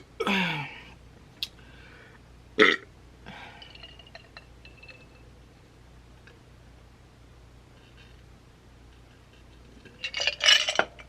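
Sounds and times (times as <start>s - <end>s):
woman belching: 2.6s - 2.9s
faint clinks: 3.4s - 5.3s.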